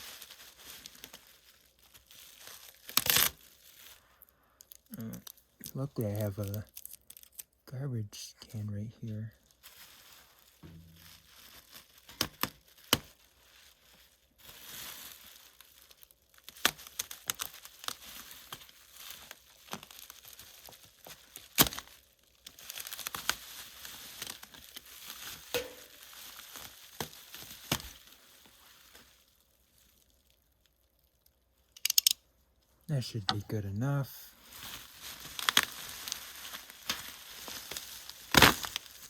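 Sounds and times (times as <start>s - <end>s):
packaging crinkling and tearing: 0.0s - 7.6s, 9.4s - 32.2s, 33.0s - 39.0s
sharp clicks and knocks: 31.8s - 32.2s.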